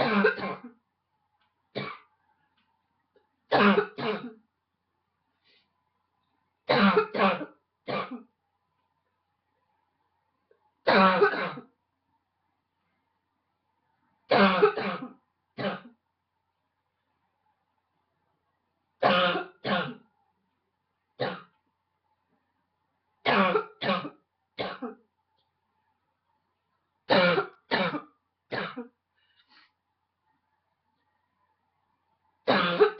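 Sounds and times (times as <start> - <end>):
woman coughing harshly: 0.0 - 0.8, 3.5 - 4.4, 6.7 - 8.3, 10.9 - 11.7, 14.3 - 15.9, 19.0 - 20.0, 23.3 - 25.0, 27.1 - 29.0, 32.5 - 32.9.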